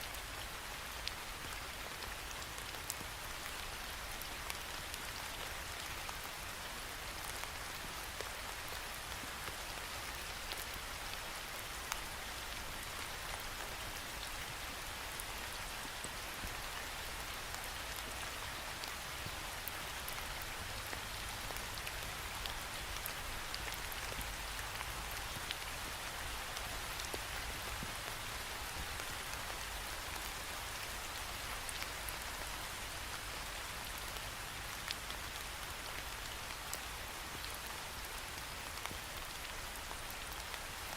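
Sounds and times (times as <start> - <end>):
rain on a window: 0.1 - 40.9.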